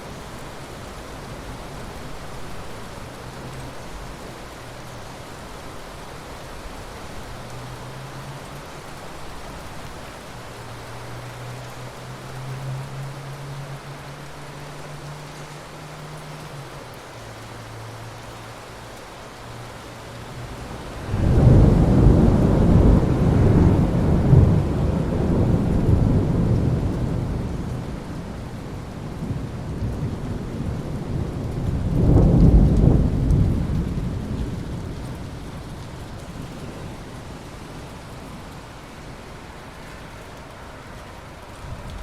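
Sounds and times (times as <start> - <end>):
steady rain: 0.0 - 42.0
thunder rumbling: 20.4 - 38.0.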